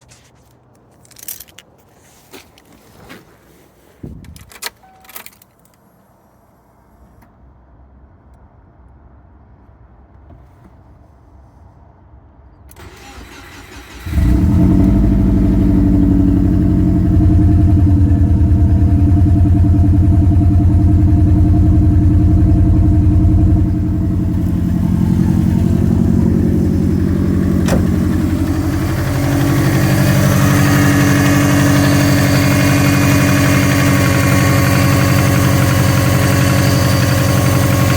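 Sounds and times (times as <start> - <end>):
car engine cranking and running: 12.7 - 37.9.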